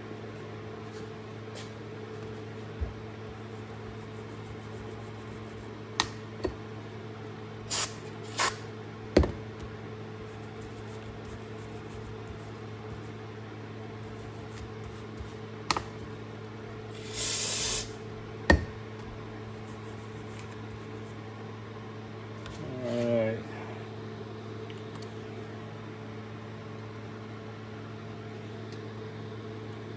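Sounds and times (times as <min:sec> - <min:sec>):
steady low hum: 0:00.0 - 0:29.9
hissing sprays of cleaner: 0:17.0 - 0:18.0.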